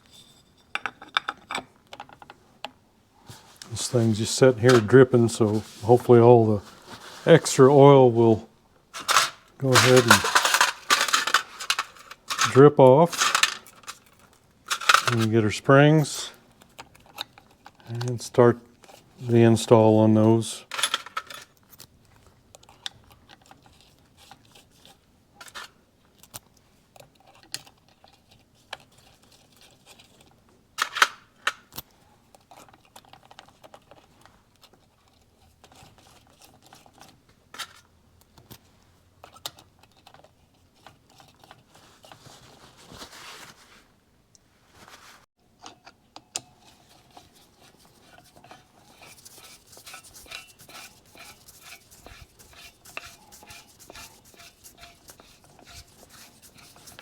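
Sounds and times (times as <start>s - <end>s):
metal clank: 9.0s - 14.0s.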